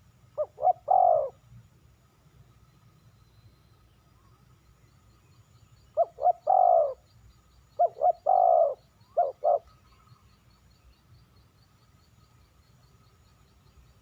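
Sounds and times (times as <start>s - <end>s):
dove cooing: 0.4s - 1.4s, 6.0s - 7.0s, 7.8s - 9.8s.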